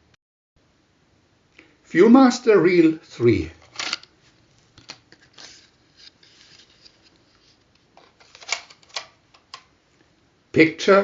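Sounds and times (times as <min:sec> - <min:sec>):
papery rustling: 0:03.6 - 0:09.1.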